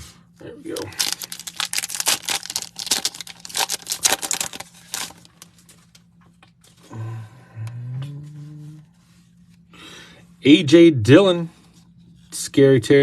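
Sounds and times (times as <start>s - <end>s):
foil wrapper tearing and crinkling: 0.7s - 5.7s.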